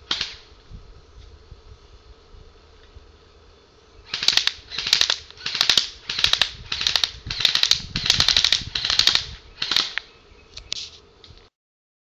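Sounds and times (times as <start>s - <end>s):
airsoft rifle automatic bursts: 4.1s - 10.0s.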